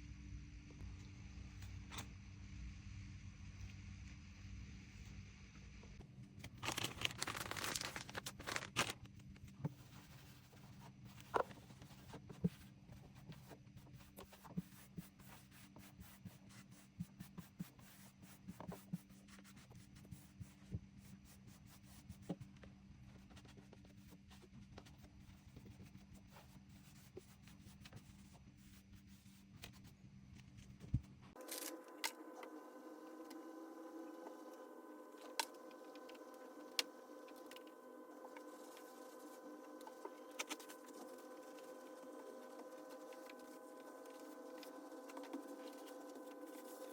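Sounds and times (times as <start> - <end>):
faint steady hum: 0.0 - 46.9
packaging rustling and tearing: 6.4 - 9.1.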